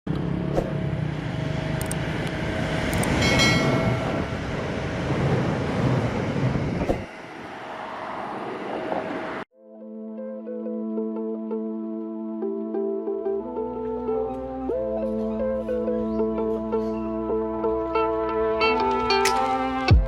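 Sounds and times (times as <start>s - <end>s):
train rumbling on rails: 0.1s - 9.5s.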